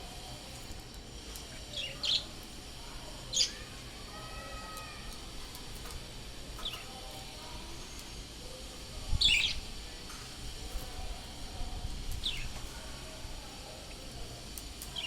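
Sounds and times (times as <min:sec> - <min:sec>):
low background hum: 0:00.0 - 0:15.0
birds chirping: 0:01.3 - 0:05.8, 0:06.5 - 0:08.0, 0:09.2 - 0:09.8, 0:12.2 - 0:12.6.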